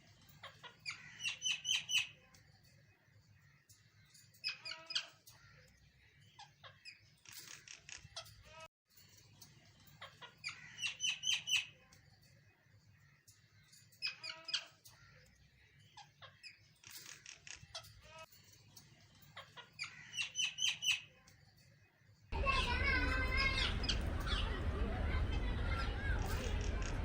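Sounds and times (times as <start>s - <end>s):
birds chirping high notes: 0.0s - 8.5s, 9.3s - 21.7s, 22.3s - 27.0s.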